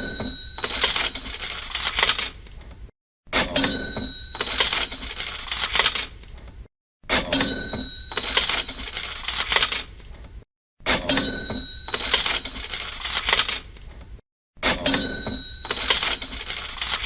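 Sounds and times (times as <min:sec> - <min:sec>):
cash register bell ding: 0:00.0 - 0:02.2, 0:03.4 - 0:05.8, 0:07.1 - 0:09.7, 0:10.9 - 0:13.5, 0:14.6 - 0:17.0
jingling clatter of coins: 0:00.0 - 0:02.5, 0:03.7 - 0:06.3, 0:07.4 - 0:10.1, 0:11.1 - 0:13.8, 0:14.8 - 0:17.0.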